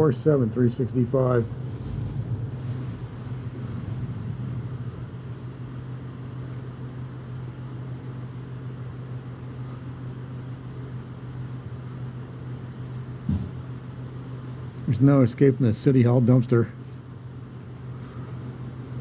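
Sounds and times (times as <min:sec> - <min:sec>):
vehicle engine idling: 0:00.0 - 0:14.8.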